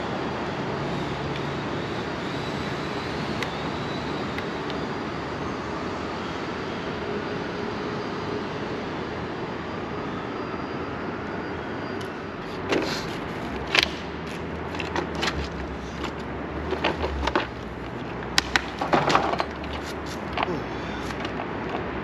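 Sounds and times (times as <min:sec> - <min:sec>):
steady background noise: 0:00.0 - 0:22.0
metal clicks and knocks: 0:14.7 - 0:20.5.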